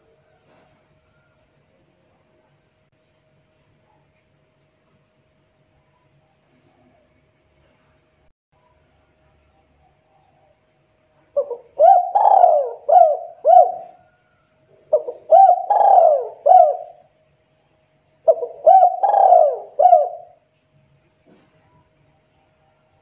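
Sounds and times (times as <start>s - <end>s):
dove cooing: 11.3s - 17.1s, 18.2s - 20.4s.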